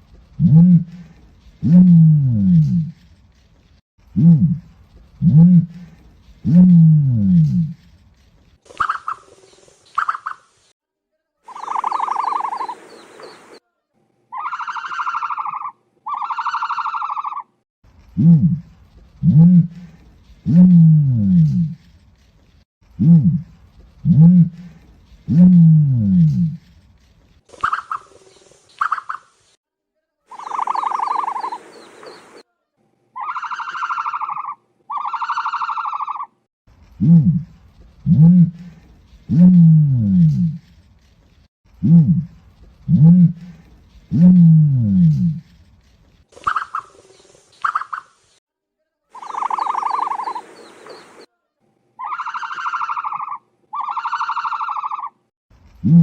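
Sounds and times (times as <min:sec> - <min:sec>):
ostrich calling: 0:11.5 - 0:13.6, 0:14.3 - 0:17.5, 0:30.3 - 0:32.4, 0:33.2 - 0:36.3, 0:49.2 - 0:51.3, 0:52.0 - 0:55.2.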